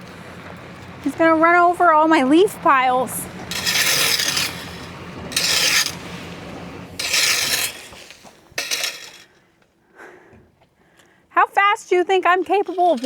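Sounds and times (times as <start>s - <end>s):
vehicle engine humming: 0.0s - 9.5s
loud rasping rustling bursts: 3.1s - 9.4s, 12.5s - 13.0s.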